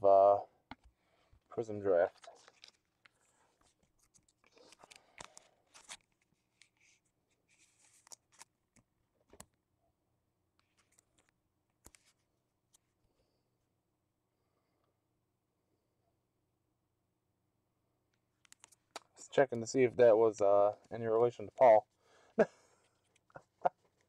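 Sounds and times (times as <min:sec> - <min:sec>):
trading cards rustling: 0:01.8 - 0:08.5.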